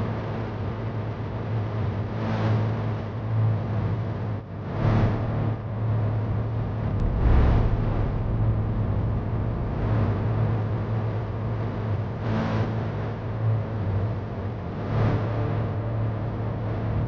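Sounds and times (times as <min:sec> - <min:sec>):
short rushing noise: 0:06.9 - 0:11.6.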